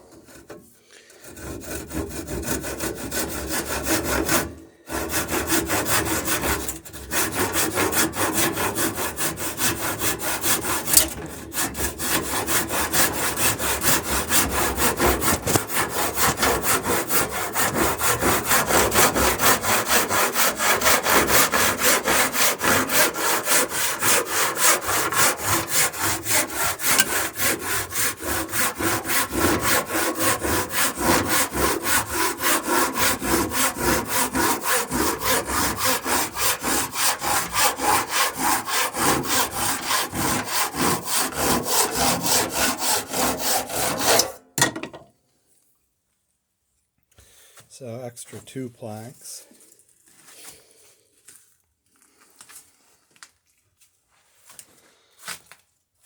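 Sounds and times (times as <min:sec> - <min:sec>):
hand saw cutting wood: 0:00.0 - 0:45.0.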